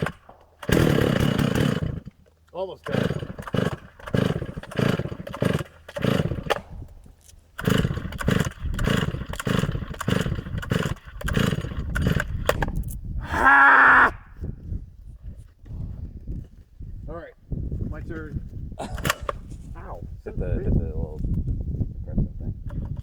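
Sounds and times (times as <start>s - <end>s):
chainsaw recoil starter pulls: 0.0s - 13.0s, 18.8s - 19.5s, 22.6s - 23.0s.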